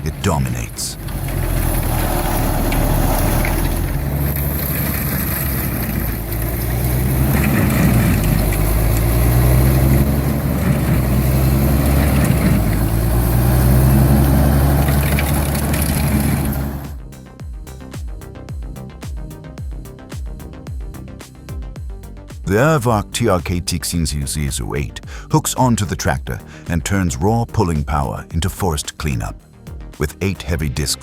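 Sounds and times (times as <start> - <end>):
disc grinding stump: 0.0 - 17.0
heavy machine engine droning: 0.0 - 17.0.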